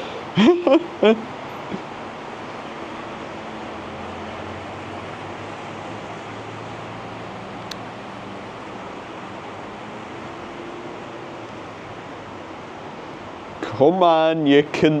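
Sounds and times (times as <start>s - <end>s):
rain hiss: 0.0s - 15.0s
small click: 7.6s - 7.8s.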